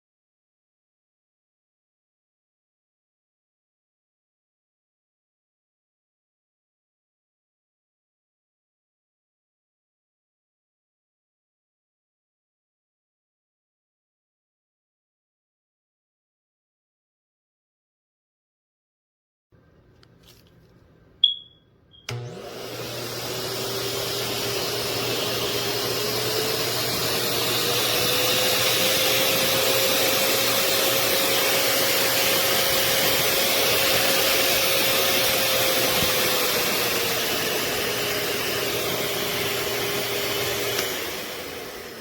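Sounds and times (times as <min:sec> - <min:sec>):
electronic beep: 0:21.2 - 0:22.1
pet dryer blower motor: 0:22.1 - 0:42.0.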